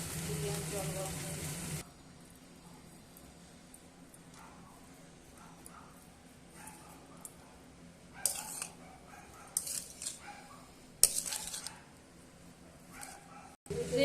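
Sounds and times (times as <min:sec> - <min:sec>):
metal utensils clinking on pots: 0:08.2 - 0:08.8, 0:09.6 - 0:10.2.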